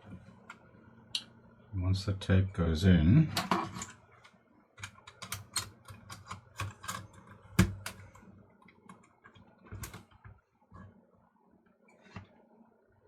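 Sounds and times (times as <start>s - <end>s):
plastic parts clicking and tapping: 3.4s - 10.4s.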